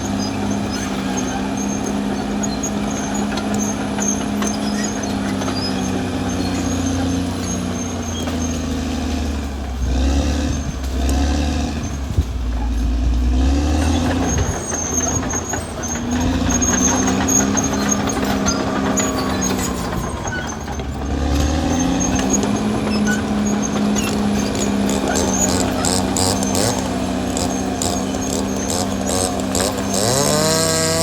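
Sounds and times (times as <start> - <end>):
bulldozer diesel engine running: 0.0 - 31.0
short high squeaks: 0.0 - 31.0.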